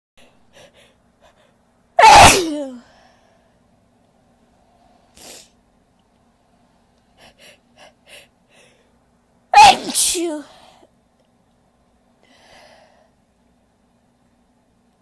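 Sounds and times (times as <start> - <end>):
faint breath hiss: 0.2 - 15.0
woman sneezing: 2.0 - 2.9, 9.6 - 10.6.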